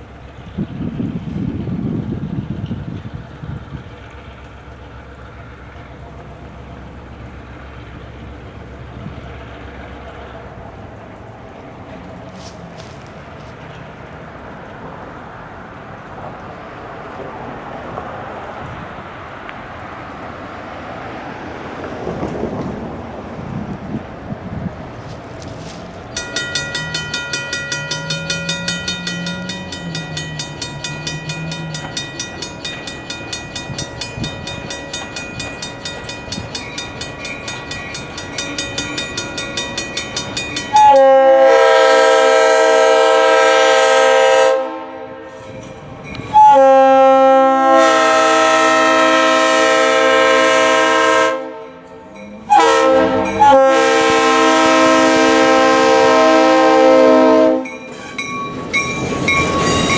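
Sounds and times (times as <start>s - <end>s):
bell ringing steadily: 26.1s - 41.3s, 57.6s - 59.9s
locomotive air horn blasts: 40.7s - 45.5s, 46.3s - 57.8s.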